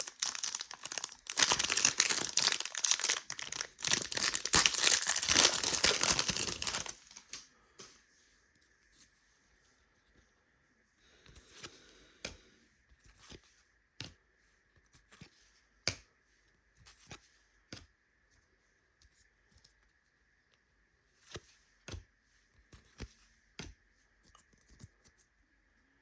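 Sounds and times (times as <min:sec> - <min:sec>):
cards rustling: 0:00.0 - 0:07.4.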